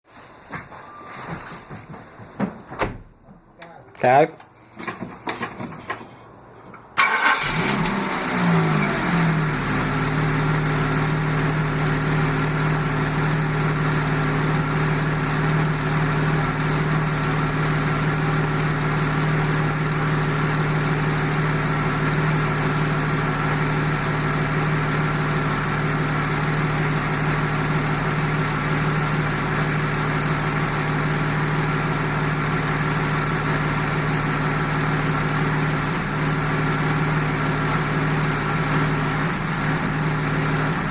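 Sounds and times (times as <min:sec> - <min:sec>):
car engine starting and idling: 0:06.9 - 0:40.9.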